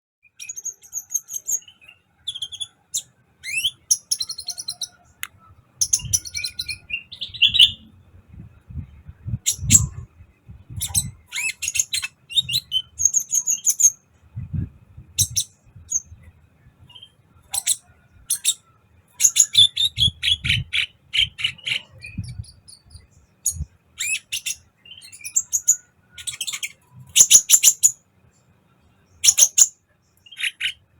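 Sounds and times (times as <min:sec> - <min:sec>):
bird chirps and trills: 0:00.2 - 0:08.0, 0:09.2 - 0:28.0, 0:29.0 - 0:30.9
low rumbling: 0:06.0 - 0:11.2, 0:14.3 - 0:16.9.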